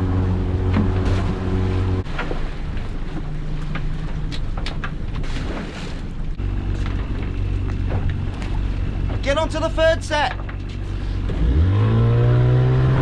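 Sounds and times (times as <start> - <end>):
boat engine running: 0.0 - 13.0
knocks and clatters: 10.2 - 10.8.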